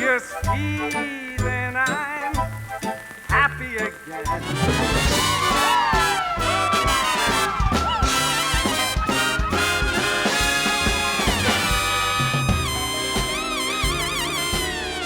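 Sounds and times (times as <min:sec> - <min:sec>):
orchestral swing music with brass: 0:00.0 - 0:15.0.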